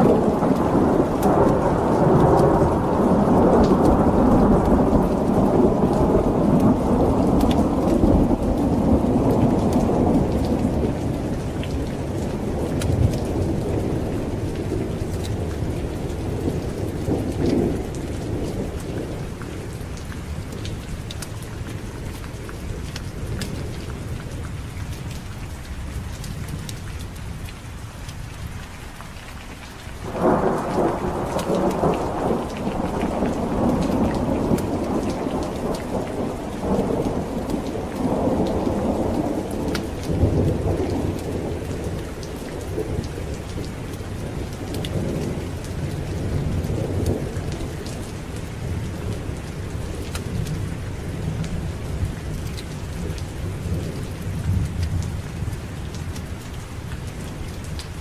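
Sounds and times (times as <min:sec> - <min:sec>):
thunder rolling: 0:00.0 - 0:19.8, 0:30.0 - 0:52.2
heavy rain: 0:00.0 - 0:58.0.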